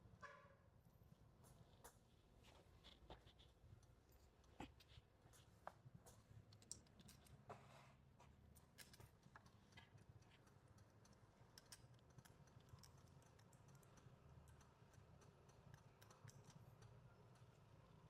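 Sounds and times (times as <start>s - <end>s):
small metal parts clicking: 6.5s - 7.4s, 8.6s - 18.0s.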